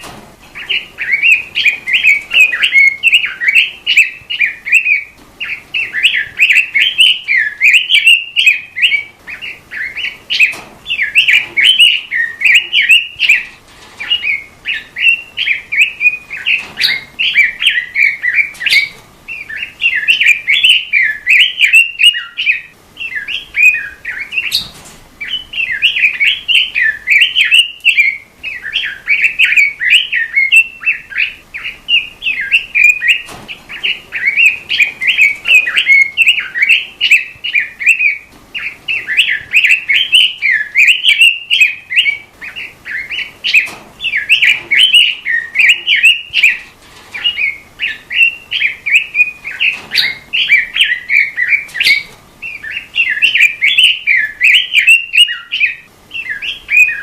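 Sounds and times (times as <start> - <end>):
robin singing: 0.0 - 57.0.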